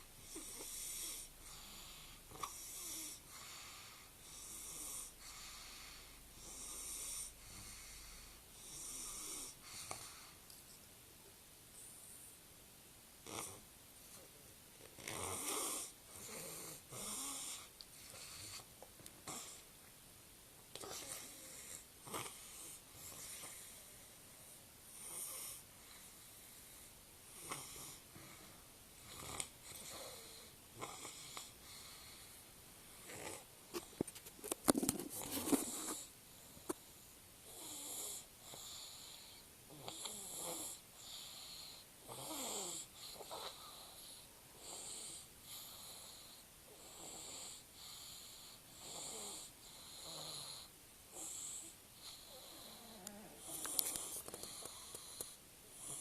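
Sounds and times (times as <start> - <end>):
child snoring wheezily: 15.0 - 18.7, 37.5 - 56.0.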